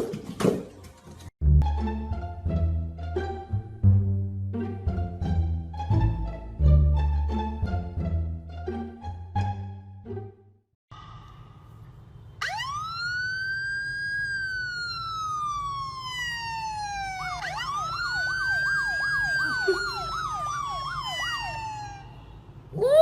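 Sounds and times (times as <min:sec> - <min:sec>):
fast siren yelp warble: 0:12.4 - 0:22.2
emergency vehicle siren wailing: 0:12.4 - 0:23.0.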